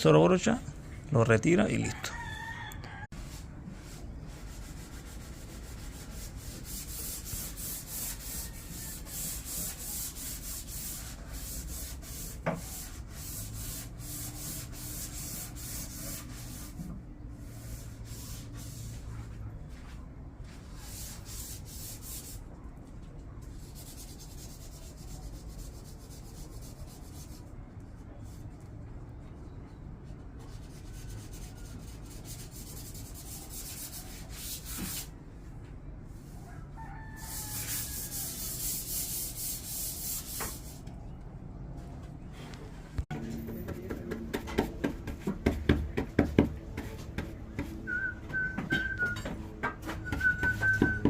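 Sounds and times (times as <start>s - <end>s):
brush rubbing on glass: 3.2s - 16.8s, 37.0s - 40.8s.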